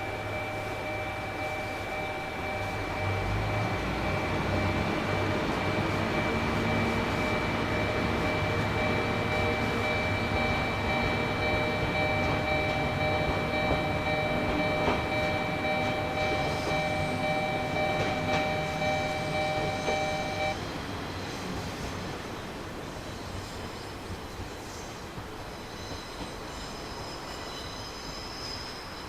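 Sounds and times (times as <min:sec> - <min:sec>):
train engine and rail rumble: 0:00.0 - 0:29.0
high-pitched wheel squeal: 0:06.2 - 0:20.6.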